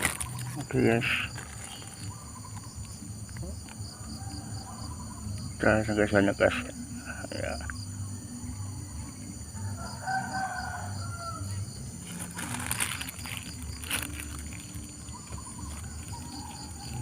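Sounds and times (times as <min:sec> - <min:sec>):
high insect drone: 0:00.0 - 0:17.0
rooster crowing: 0:03.8 - 0:05.2, 0:09.5 - 0:11.8, 0:15.1 - 0:17.0.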